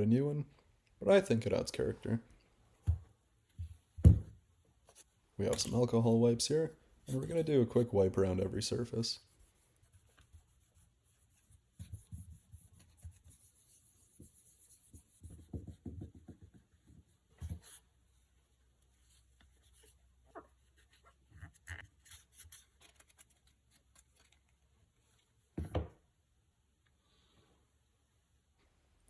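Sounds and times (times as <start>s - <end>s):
wipe scrubbing phone case: 9.3s - 17.9s.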